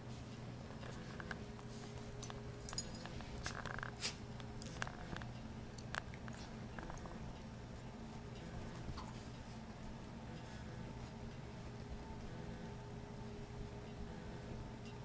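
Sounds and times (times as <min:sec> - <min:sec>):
steady low hum: 0:00.0 - 0:15.0
wolf pups chewing and scuffing: 0:00.1 - 0:12.4.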